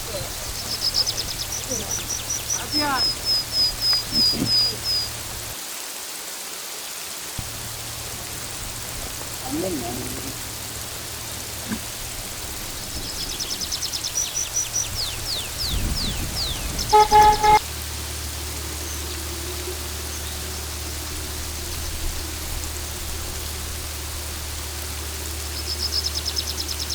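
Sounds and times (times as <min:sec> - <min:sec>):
steady low hum: 0:00.0 - 0:05.6, 0:07.4 - 0:26.0
bird trilling and whistling: 0:00.3 - 0:05.3
vehicle horn blast: 0:16.6 - 0:17.8.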